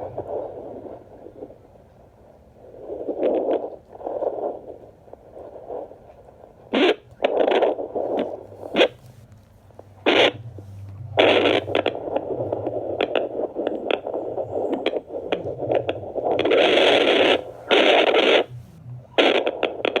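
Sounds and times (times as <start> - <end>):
doppler speaker static hiss and crackle: 0.0 - 20.0.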